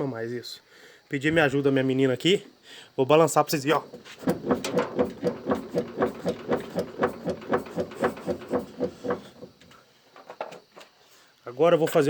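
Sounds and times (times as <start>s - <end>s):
shock absorber knocking: 3.9s - 9.8s.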